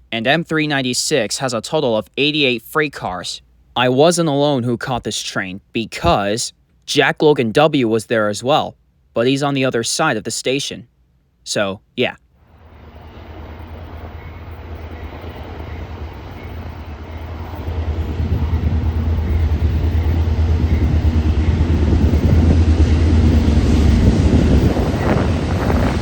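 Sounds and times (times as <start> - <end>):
diesel locomotive engine rumble: 12.4 - 26.0.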